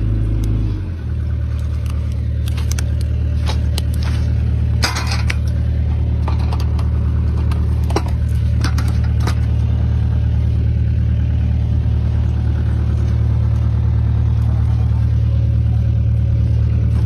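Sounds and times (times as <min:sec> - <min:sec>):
diesel engine running: 0:00.0 - 0:17.0
metal clanks and rattles: 0:01.5 - 0:09.9.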